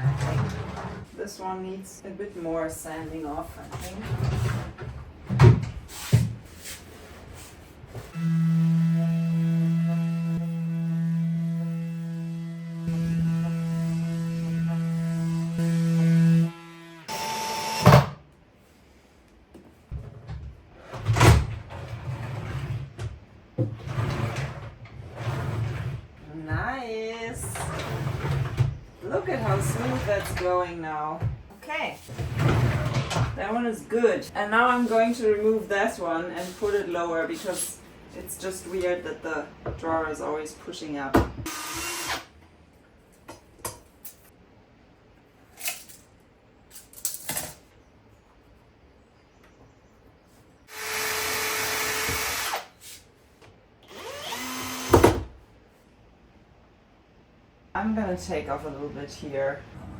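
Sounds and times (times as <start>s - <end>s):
wooden drawer scraping: 0.0s - 1.1s, 3.4s - 8.1s, 20.0s - 26.7s, 27.4s - 30.6s, 32.0s - 33.4s
wooden drawer sliding: 23.6s - 26.1s, 32.1s - 33.4s.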